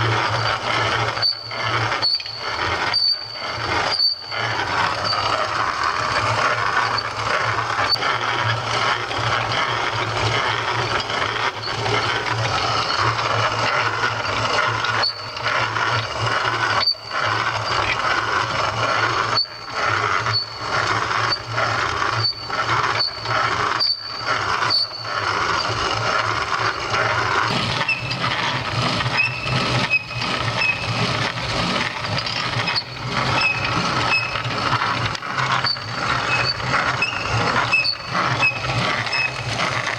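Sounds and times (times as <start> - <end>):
hand-crank grinder grinding: 0.0 - 39.9
thin squeak: 1.2 - 5.4, 32.2 - 34.5, 35.6 - 39.4.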